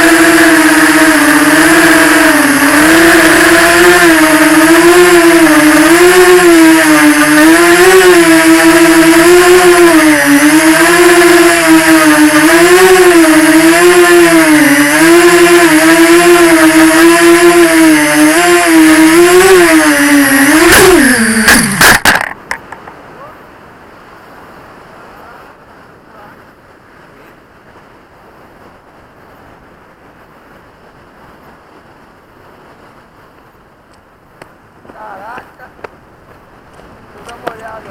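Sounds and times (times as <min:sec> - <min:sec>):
quadcopter motors whining: 0:00.0 - 0:22.3.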